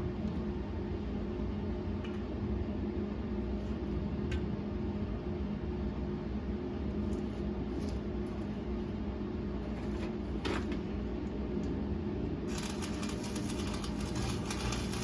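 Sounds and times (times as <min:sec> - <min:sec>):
machine hum: 0:11.0 - 0:15.0
welding arc crackling hiss: 0:12.5 - 0:15.0.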